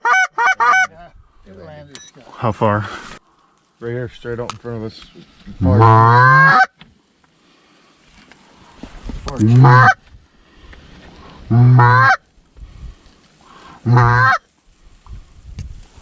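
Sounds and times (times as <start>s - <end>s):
goose call honks: 0.0s - 0.9s, 5.6s - 6.7s, 9.4s - 10.0s, 11.5s - 12.2s, 13.8s - 14.4s.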